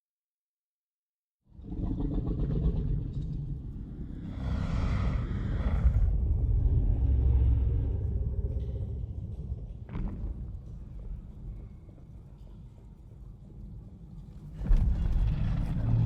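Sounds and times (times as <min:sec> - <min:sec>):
deep heavy rumble: 0:01.6 - 0:11.8, 0:14.4 - 0:16.0
rough bright roaring layer: 0:03.0 - 0:09.9.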